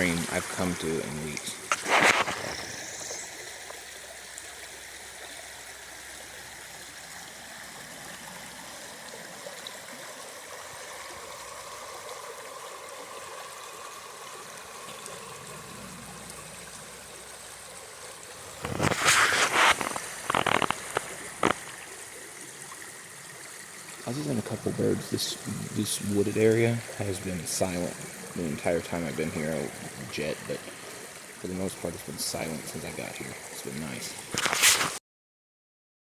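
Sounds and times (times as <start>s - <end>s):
stream trickling over rocks: 0.0s - 35.0s
loud rustling bursts: 18.7s - 21.5s.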